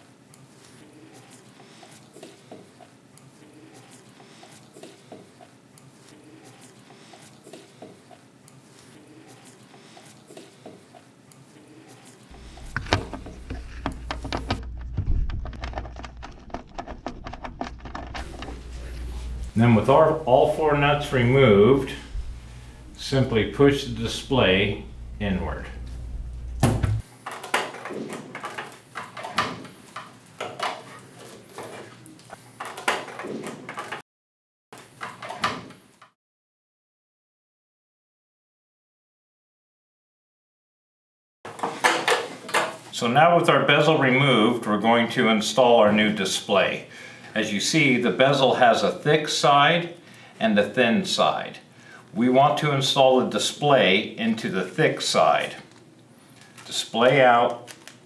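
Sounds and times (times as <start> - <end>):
handling knocks: 12.3 - 21.3.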